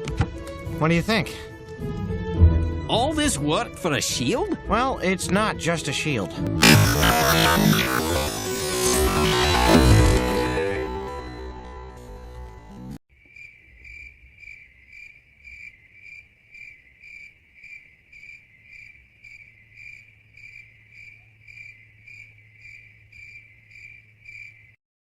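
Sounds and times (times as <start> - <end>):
background music: 0.0 - 13.0
cricket chirps: 13.1 - 24.8.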